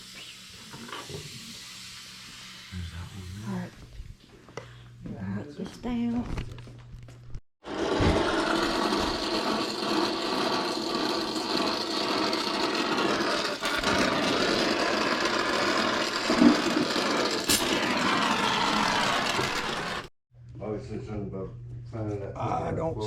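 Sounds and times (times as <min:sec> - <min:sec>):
power tool running: 0:07.6 - 0:20.1.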